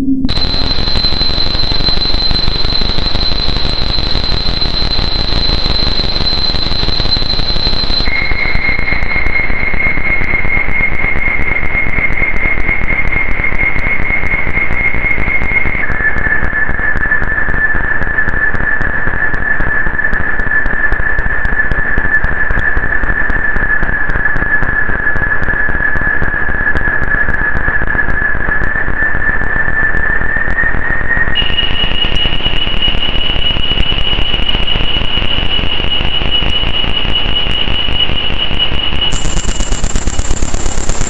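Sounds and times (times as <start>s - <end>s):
synthesizer ambient drone: 0.0s - 2.0s, 39.1s - 41.0s
high whistling tone: 0.0s - 18.0s, 28.9s - 41.0s
faint crackles: 39.1s - 41.0s.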